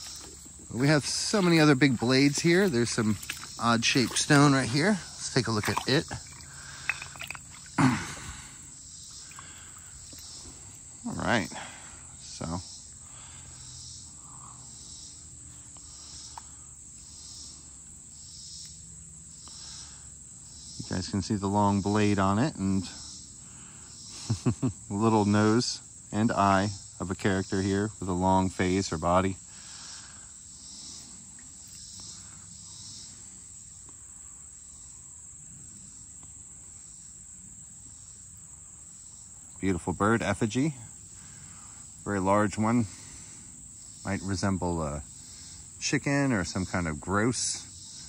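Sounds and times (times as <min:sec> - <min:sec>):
pulsing insect layer: 0:00.0 - 0:13.3
insects chirping: 0:00.0 - 0:48.0.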